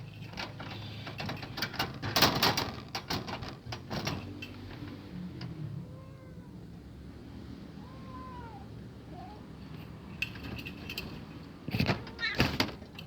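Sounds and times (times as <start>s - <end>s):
clicks knocks and rattles: 0.1s - 5.5s, 10.2s - 13.0s.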